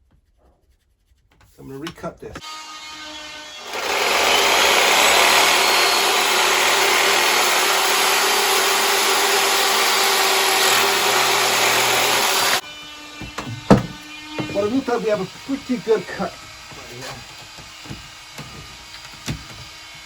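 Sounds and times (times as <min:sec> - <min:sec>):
power saw cutting plastic pipe: 0:02.4 - 0:20.0
sharp knocks: 0:13.2 - 0:14.6.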